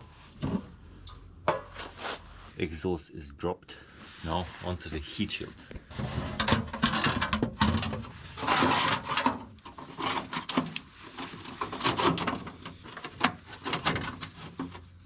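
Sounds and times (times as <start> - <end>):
metal scraping: 5.9 - 14.9
metal heat shield knocks and rattles: 6.0 - 10.8.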